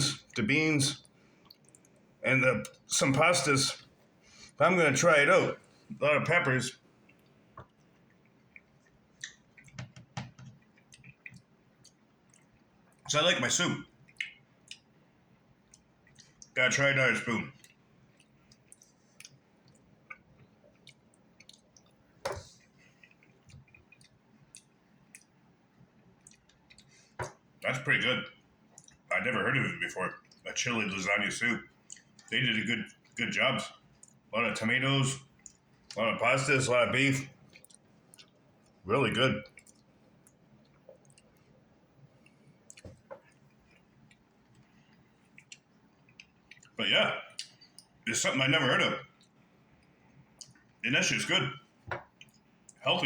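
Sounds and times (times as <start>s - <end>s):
quiet chewing: 1.0s - 2.9s, 6.8s - 13.1s, 13.8s - 16.6s, 17.5s - 29.1s, 30.1s - 30.6s, 31.6s - 34.3s, 35.2s - 36.1s, 37.3s - 48.1s, 49.0s - 50.8s, 51.6s - 52.9s
mouth sounds eating soup: 45.3s - 48.4s.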